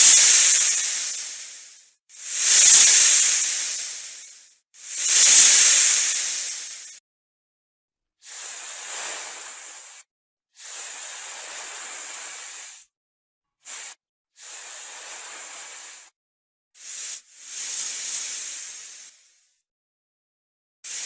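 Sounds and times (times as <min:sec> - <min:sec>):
snake hissing: 0:00.0 - 0:07.0, 0:08.2 - 0:12.9, 0:13.6 - 0:16.1, 0:16.8 - 0:19.4.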